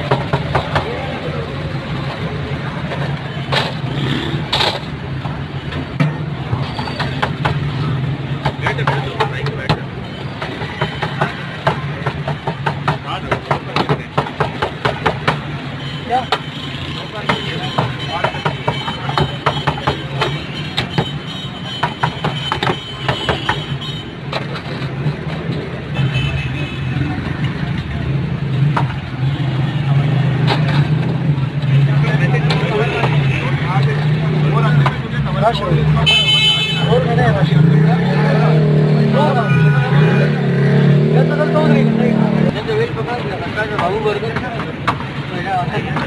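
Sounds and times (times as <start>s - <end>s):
sharp knocks and clicks: 0.0s - 1.0s, 2.0s - 25.8s, 27.2s - 29.6s, 30.2s - 31.8s, 32.4s - 35.2s, 43.6s - 46.0s.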